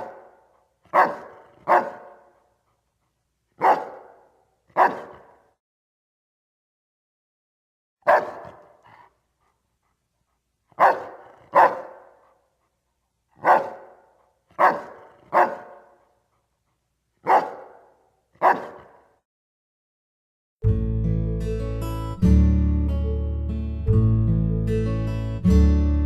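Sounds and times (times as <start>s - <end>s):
dog barking: 0.0s - 2.5s, 3.6s - 5.6s, 8.0s - 9.1s, 10.7s - 12.5s, 13.4s - 16.4s, 17.2s - 19.2s.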